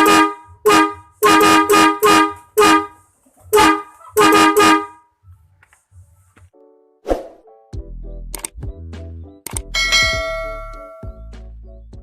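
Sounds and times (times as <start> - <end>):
bus horn blasts: 0.0 - 5.0.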